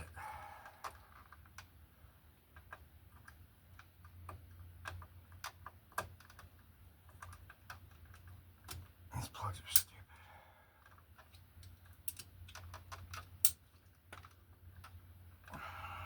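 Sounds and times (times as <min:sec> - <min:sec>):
clicks of plastic plug parts: 0:10.8 - 0:15.6.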